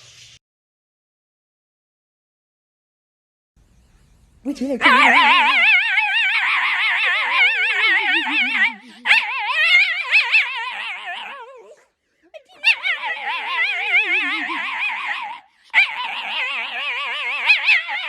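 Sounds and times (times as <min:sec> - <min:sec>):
dog howling: 0:04.8 - 0:18.0.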